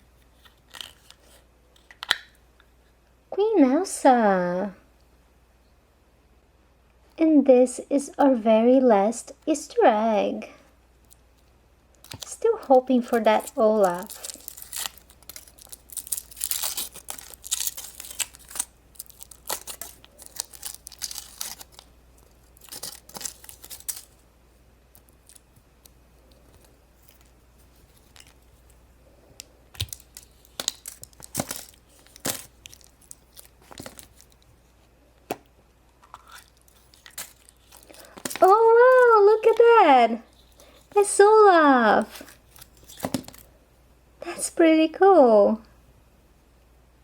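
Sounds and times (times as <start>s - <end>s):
foil wrapper tearing and crinkling: 0.5s - 1.2s, 13.0s - 24.2s, 29.8s - 34.5s, 36.2s - 39.6s, 42.1s - 43.5s.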